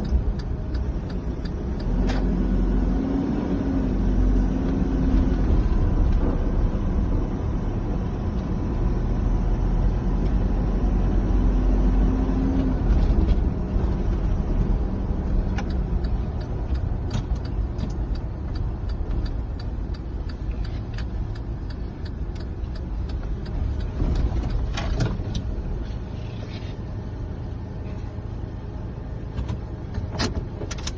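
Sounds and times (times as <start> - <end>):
light regular ticking: 0.0 - 2.1, 14.7 - 25.5
diesel engine running: 0.0 - 30.9.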